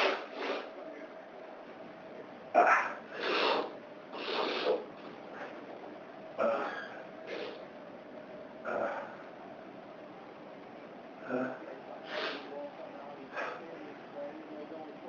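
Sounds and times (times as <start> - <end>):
noisy breaths: 0.0 - 1.0, 2.6 - 7.8, 8.6 - 10.2, 11.1 - 14.9
man sneezing: 2.6 - 4.8.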